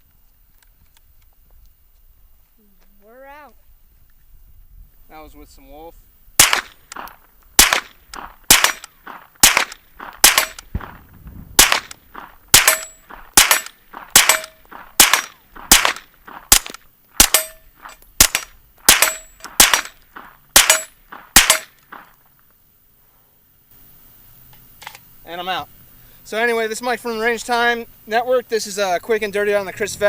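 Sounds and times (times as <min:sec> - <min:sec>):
suppressed pistol shots: 0:06.4 - 0:17.6, 0:18.2 - 0:21.8.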